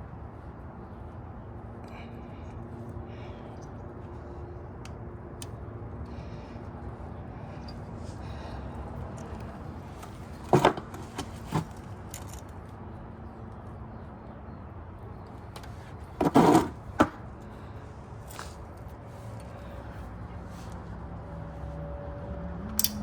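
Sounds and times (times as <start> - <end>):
metal parts clunking: 10.0 - 12.5.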